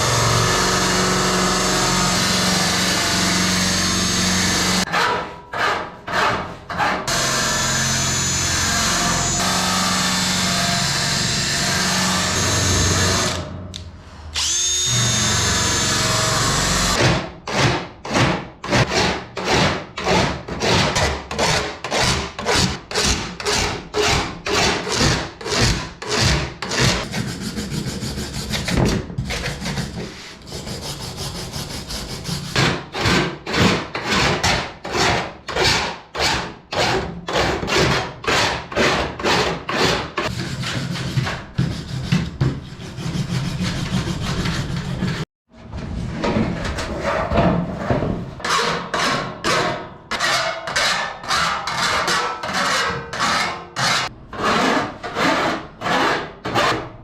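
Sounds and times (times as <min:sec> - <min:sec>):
hand file rasping: 0:20.6 - 0:33.1, 0:36.8 - 0:45.3.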